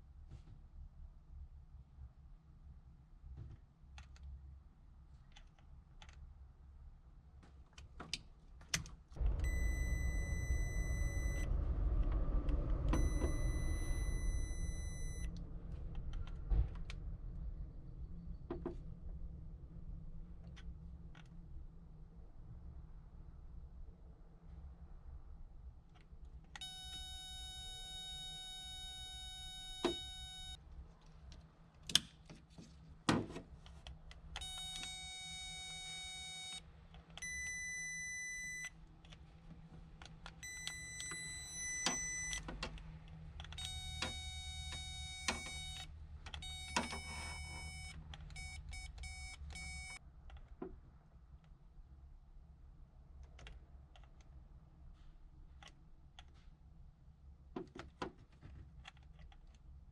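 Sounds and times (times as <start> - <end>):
electronic beeping tones: 9.4 - 11.5, 13.0 - 15.3.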